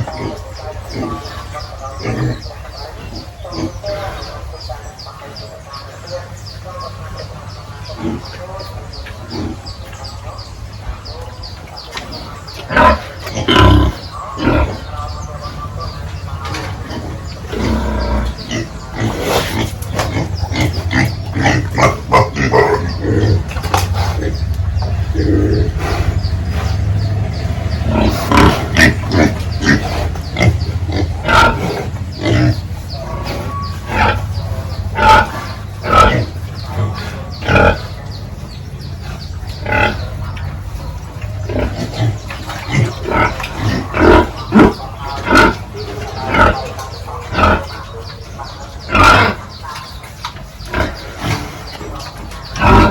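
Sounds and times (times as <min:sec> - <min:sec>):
pigs grunting and squealing: 0:00.0 - 0:52.9.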